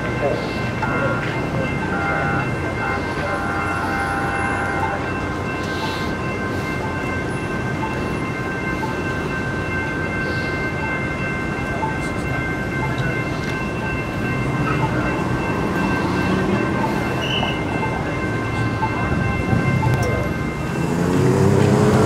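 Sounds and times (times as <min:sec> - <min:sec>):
light-rail train running: 0:00.0 - 0:22.0.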